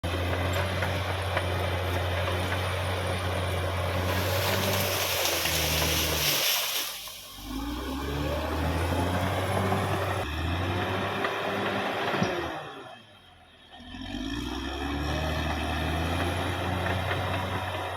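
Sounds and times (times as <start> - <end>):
bulldozer diesel engine running: 0.0 - 17.9
hiss: 4.1 - 7.4.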